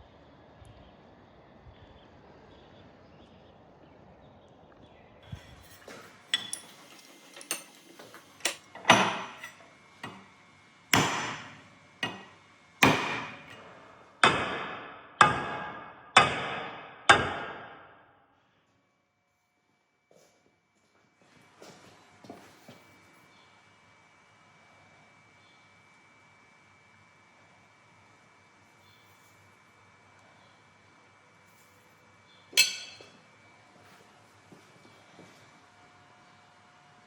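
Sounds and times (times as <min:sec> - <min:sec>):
knife chopping with ringing blows: 0:08.4 - 0:10.3, 0:11.0 - 0:13.6, 0:14.2 - 0:17.6, 0:32.6 - 0:33.2.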